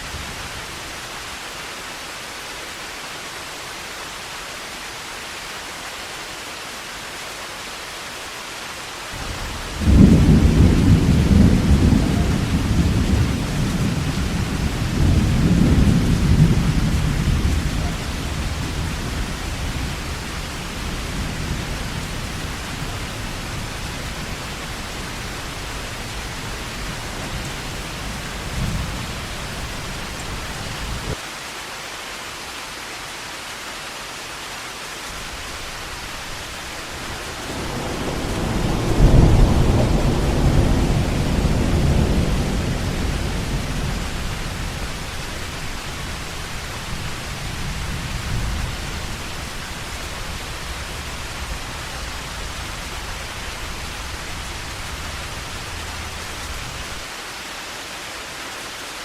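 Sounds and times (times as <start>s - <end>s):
heavy rain falling: 0.0s - 59.0s
thunder rumbling: 9.2s - 31.2s, 35.6s - 57.1s.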